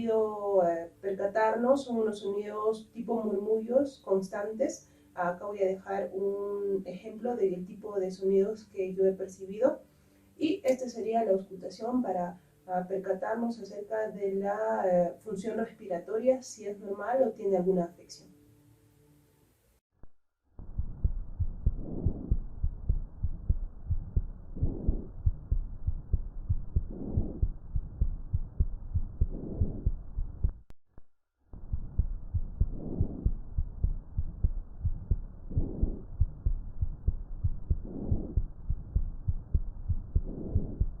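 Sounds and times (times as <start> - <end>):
low heartbeat thuds: 20.6 - 30.7, 31.6 - 41.0
breath sounds through stethoscope: 40.1 - 40.9.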